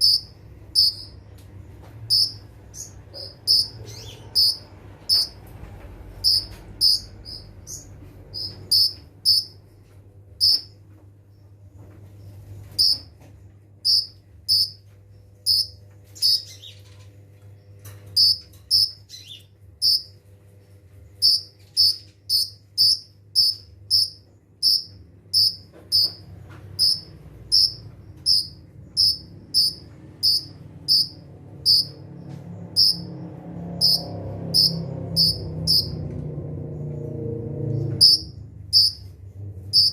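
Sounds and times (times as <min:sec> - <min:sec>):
sunbird chirping: 0:00.0 - 0:01.2, 0:02.1 - 0:05.4, 0:06.2 - 0:09.6, 0:13.8 - 0:17.0, 0:18.2 - 0:20.1, 0:21.2 - 0:26.2, 0:26.8 - 0:33.1.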